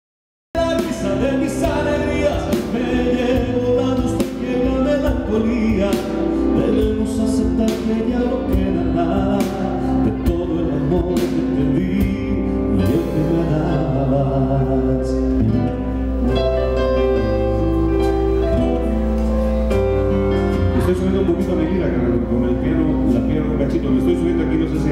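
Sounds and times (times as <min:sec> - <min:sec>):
live band with piano and drums: 0:00.5 - 0:24.9
man singing a ballad: 0:00.6 - 0:16.5, 0:20.3 - 0:24.9.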